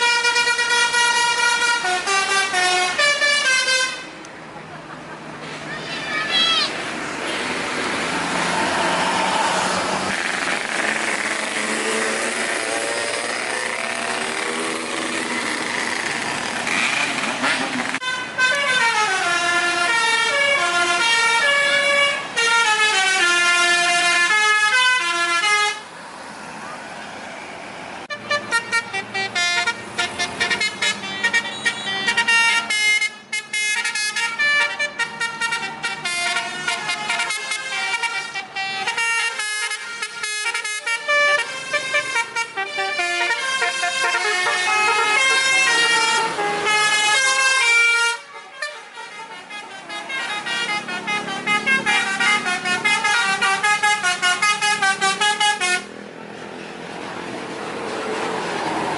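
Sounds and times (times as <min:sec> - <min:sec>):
musical air horn playing tunes: 0:00.0 - 0:04.1, 0:28.1 - 0:55.9.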